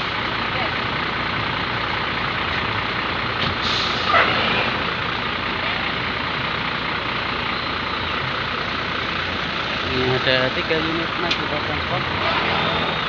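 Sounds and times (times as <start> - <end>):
bus traffic passing: 0.0 - 13.0
sharp air hiss: 3.6 - 4.2
short falling squeal: 12.2 - 13.0.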